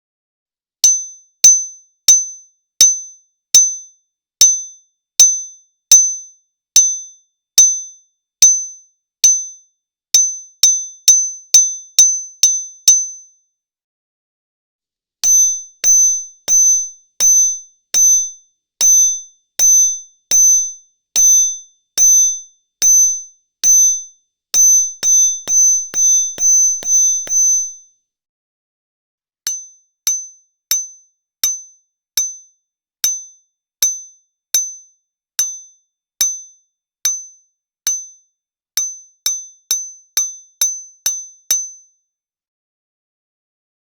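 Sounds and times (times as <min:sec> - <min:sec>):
hammer striking metal pry bar: 0:15.2 - 0:18.1, 0:22.8 - 0:27.8.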